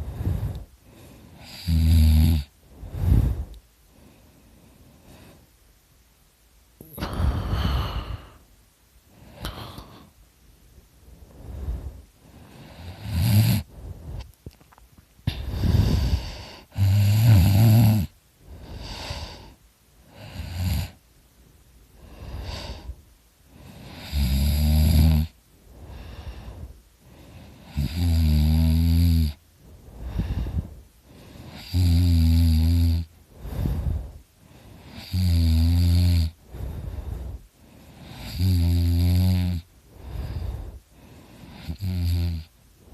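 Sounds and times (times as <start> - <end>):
soft breaths: 0.0 - 42.9
man snoring loudly: 1.4 - 2.5, 12.6 - 13.7, 15.3 - 18.1, 20.2 - 21.0, 23.8 - 25.4, 27.6 - 29.4, 31.4 - 33.9, 34.8 - 36.4, 38.0 - 40.5, 41.5 - 42.5.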